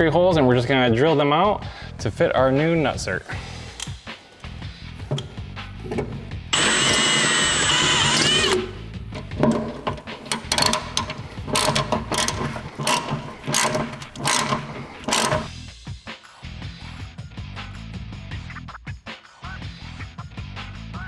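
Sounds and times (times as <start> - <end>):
power drill drilling metal: 5.9 - 15.5
sharp metallic clicks: 6.6 - 15.5.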